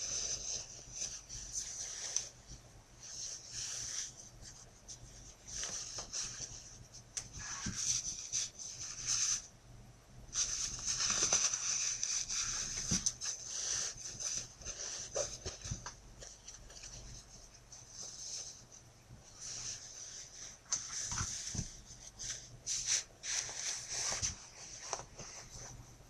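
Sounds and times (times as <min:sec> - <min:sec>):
fabric rustling: 0:10.3 - 0:26.0.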